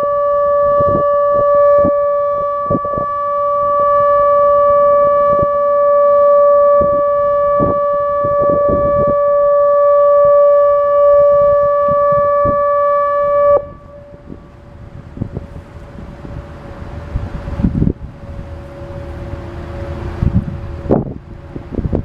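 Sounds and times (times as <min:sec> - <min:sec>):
tornado warning siren steady tone: 0:00.0 - 0:22.0.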